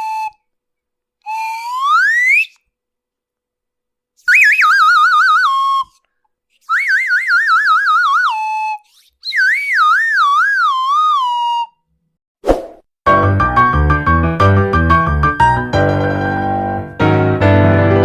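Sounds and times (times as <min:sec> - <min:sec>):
comic wobbling whistle: 0:01.3 - 0:02.6, 0:04.2 - 0:06.0, 0:06.6 - 0:11.8.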